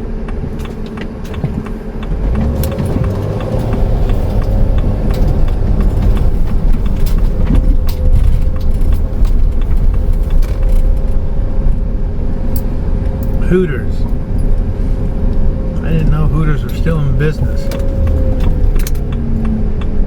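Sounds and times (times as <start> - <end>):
engine and road rumble: 0.0 - 20.0
light clicks and rattles: 0.2 - 11.9, 16.0 - 19.9.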